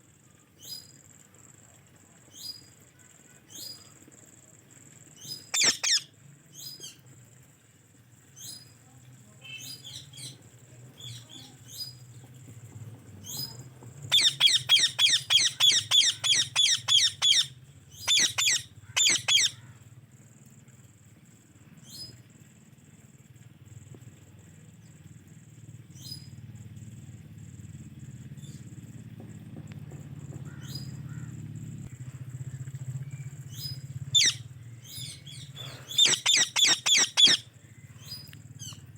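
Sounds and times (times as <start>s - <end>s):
low steady hum: 0.0s - 38.9s
parrot chirping and calling: 5.4s - 6.1s, 14.1s - 19.6s, 34.1s - 37.5s.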